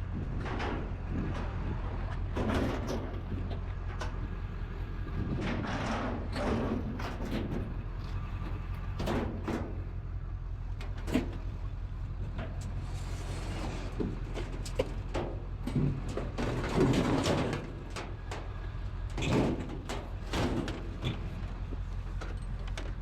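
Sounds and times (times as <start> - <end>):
scrap knocking and clattering: 0.2 - 4.3, 5.2 - 9.9, 12.3 - 23.0.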